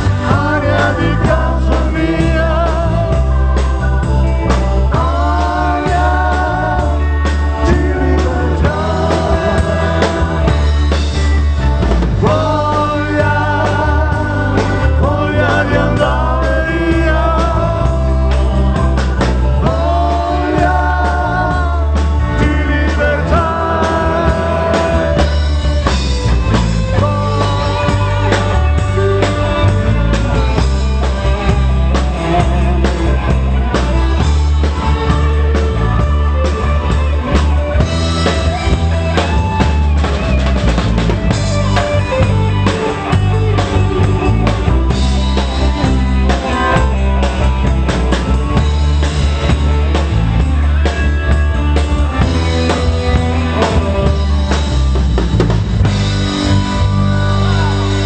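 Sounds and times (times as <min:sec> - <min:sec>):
person singing: 0:00.0 - 0:11.5, 0:12.1 - 0:34.3, 0:45.4 - 0:48.2, 0:56.4 - 0:58.0
heavy steady bass: 0:00.0 - 0:58.0
pop-rock band playing: 0:00.0 - 0:58.0.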